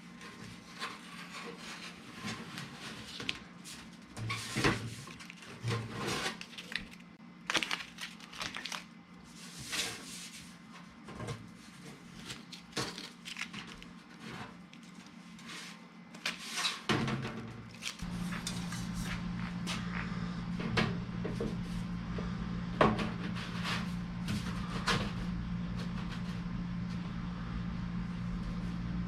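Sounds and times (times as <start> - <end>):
faint low hum: 17.9 - 29.0.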